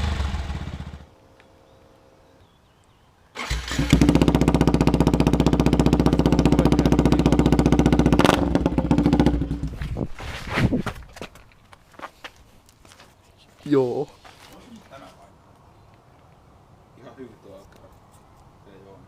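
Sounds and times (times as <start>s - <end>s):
motorcycle engine starting and idling: 0.0s - 1.1s, 3.4s - 9.9s.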